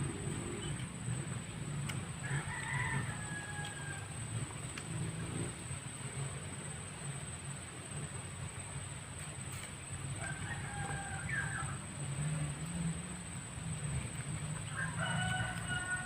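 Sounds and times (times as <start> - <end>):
steady low rumble: 0.0 - 15.7
rooster crowing: 2.2 - 4.3, 10.1 - 11.8, 14.6 - 16.0.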